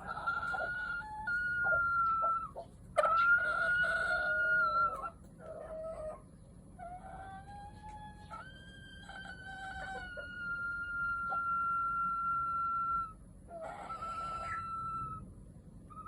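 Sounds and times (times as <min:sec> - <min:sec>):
rooster crowing: 0:00.0 - 0:06.2, 0:07.0 - 0:15.2
low clucking: 0:00.0 - 0:11.6.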